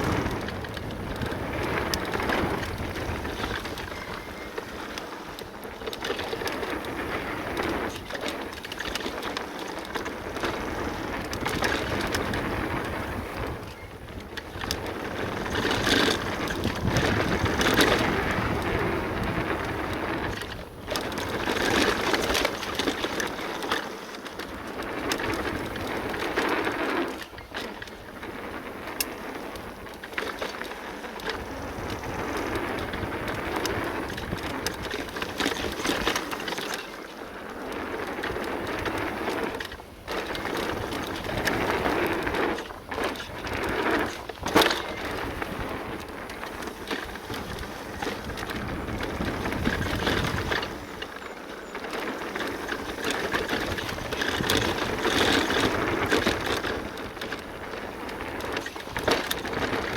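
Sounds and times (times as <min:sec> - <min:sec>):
bike rattling and knocking: 0:00.0 - 0:59.9
bike tyres rushing on gravel: 0:00.0 - 0:59.9.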